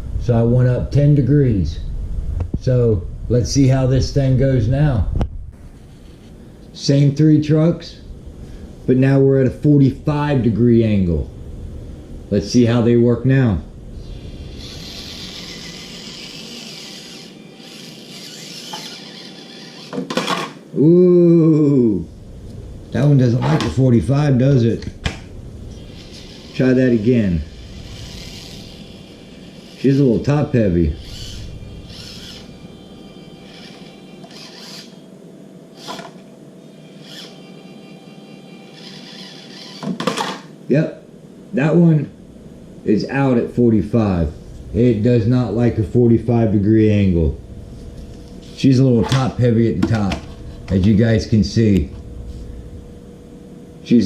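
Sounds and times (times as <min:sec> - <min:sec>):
small electric motor whining: 0:14.0 - 0:20.6, 0:25.6 - 0:35.1, 0:35.7 - 0:40.5.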